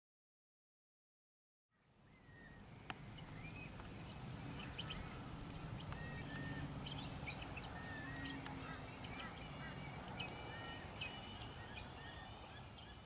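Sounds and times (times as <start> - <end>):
bird chirps: 1.8 - 13.0.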